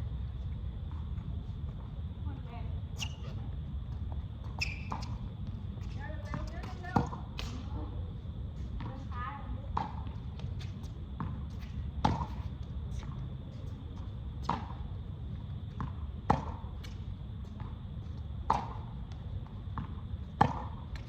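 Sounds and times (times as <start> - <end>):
tennis ball bouncing: 3.0 - 7.7, 8.7 - 13.3, 14.4 - 14.9, 15.8 - 17.8, 18.4 - 21.0
racket hitting tennis ball: 5.8 - 7.7, 11.2 - 12.5, 19.8 - 21.0.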